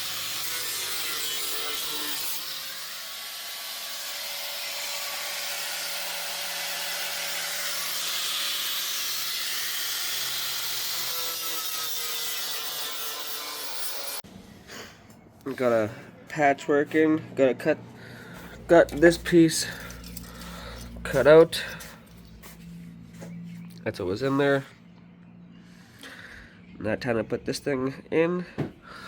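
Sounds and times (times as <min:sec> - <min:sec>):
power tool cutting sheet metal: 0:00.0 - 0:14.2.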